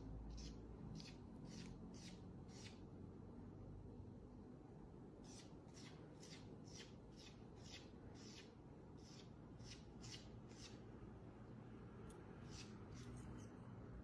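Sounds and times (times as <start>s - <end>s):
soft scratching strokes: 12.4s - 13.7s.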